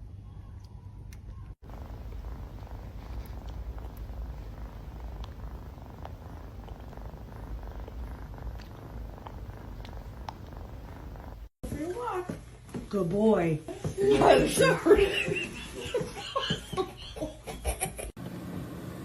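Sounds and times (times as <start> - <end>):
cat purring: 1.6 - 11.6
faint ticks: 1.7 - 11.5.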